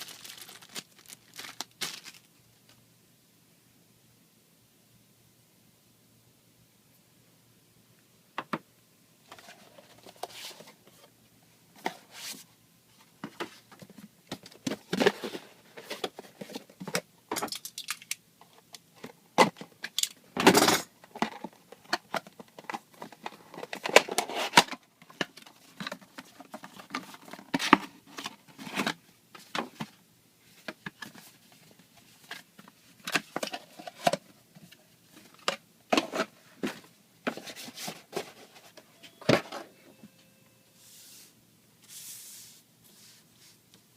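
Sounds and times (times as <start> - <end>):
packaging rustling and crinkling: 0.0 - 2.8
clicks and rattles of small parts: 16.8 - 28.9.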